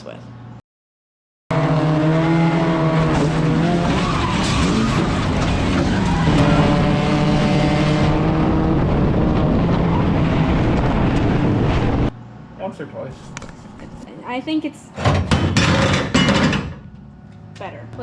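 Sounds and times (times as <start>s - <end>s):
race car engines droning: 1.5s - 12.6s.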